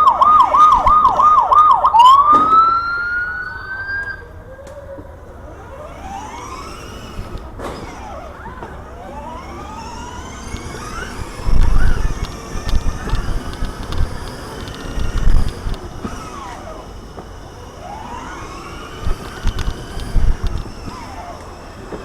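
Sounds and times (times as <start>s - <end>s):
electronic siren wailing: 0.0s - 4.5s, 8.0s - 16.8s, 17.8s - 21.5s
road noise: 0.0s - 22.0s.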